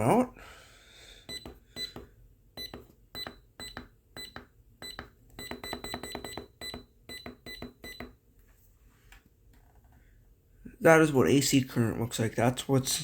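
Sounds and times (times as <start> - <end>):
pitched click-beeps from a knob: 2.6 - 8.2.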